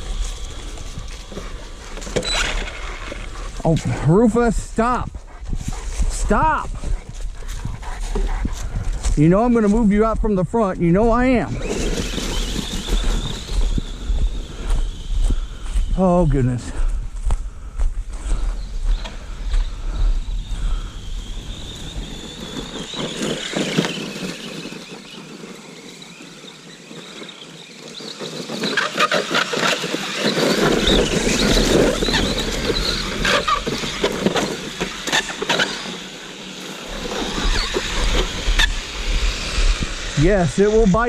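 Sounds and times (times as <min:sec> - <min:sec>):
electric motor whining: 0:00.0 - 0:41.0
tyres scuffing and chassis rattling: 0:22.1 - 0:39.4.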